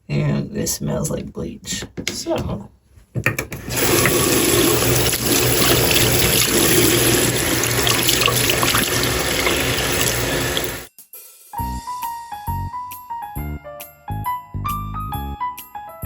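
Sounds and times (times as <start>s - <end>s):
tap running into sink: 3.2s - 10.9s.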